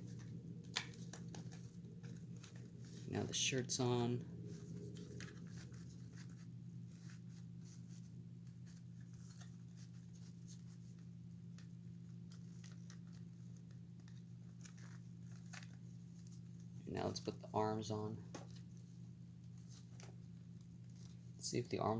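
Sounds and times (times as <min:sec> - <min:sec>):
hands handling cloth and figure: 0:00.0 - 0:16.8
steady low hum: 0:00.0 - 0:21.9.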